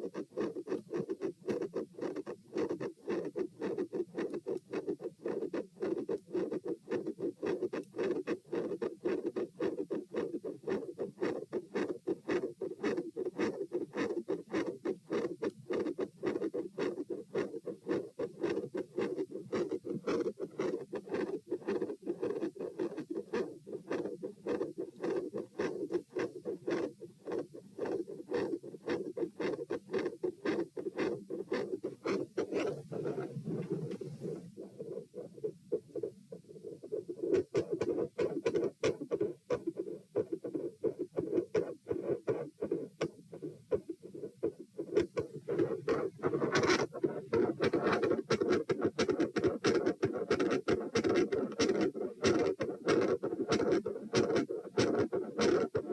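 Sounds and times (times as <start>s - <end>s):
heart murmur through stethoscope: 0.0s - 55.9s.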